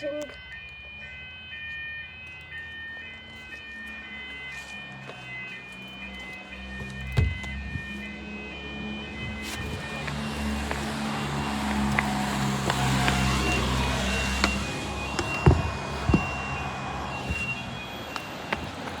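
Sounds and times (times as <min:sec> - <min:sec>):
vehicle engine humming: 0:00.4 - 0:19.0
sharp knocks: 0:06.9 - 0:08.0, 0:09.7 - 0:19.0.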